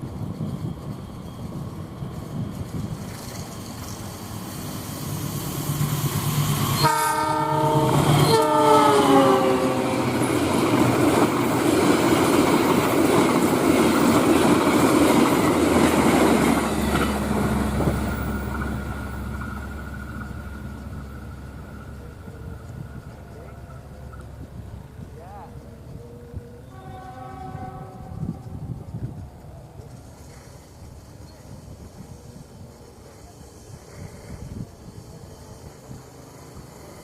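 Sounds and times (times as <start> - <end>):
train carriages rushing past: 0.0 - 37.0
train horn: 6.7 - 10.1, 25.9 - 28.9.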